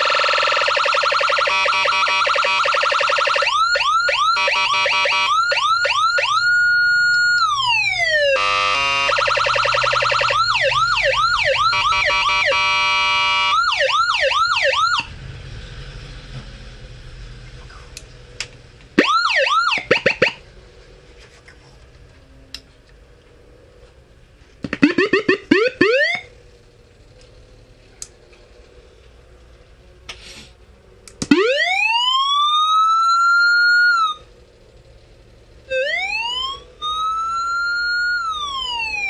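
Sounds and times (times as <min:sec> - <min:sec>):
electronic siren yelps and wails: 0:00.0 - 0:15.1, 0:19.0 - 0:20.4, 0:24.7 - 0:26.3, 0:31.2 - 0:34.3, 0:35.7 - 0:39.0.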